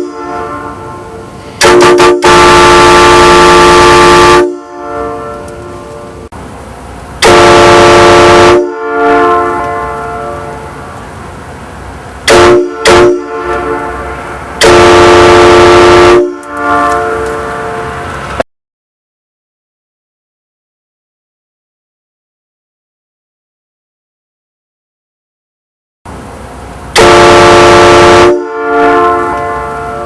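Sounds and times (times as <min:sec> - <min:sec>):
air train horn blasts: 0:00.0 - 0:06.3, 0:07.2 - 0:10.8, 0:12.2 - 0:18.4, 0:26.9 - 0:30.0.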